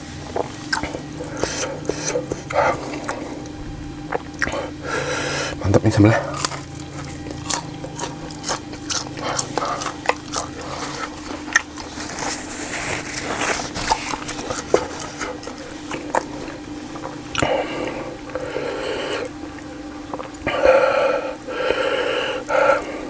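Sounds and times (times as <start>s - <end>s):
chewing with wet smacks: 0.0s - 23.0s
faint steady hum: 0.0s - 23.0s.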